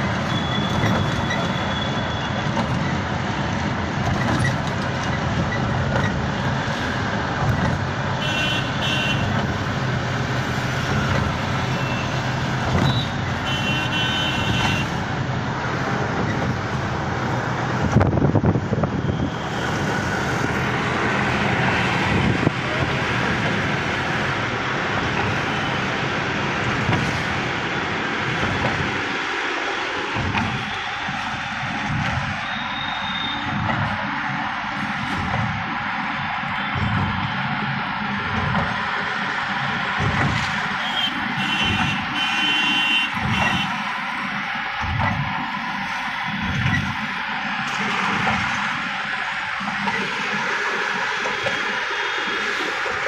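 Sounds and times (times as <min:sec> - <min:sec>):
traffic noise: 0:00.0 - 0:53.0
car horn toots: 0:08.2 - 0:09.4, 0:11.7 - 0:15.0, 0:40.7 - 0:43.9.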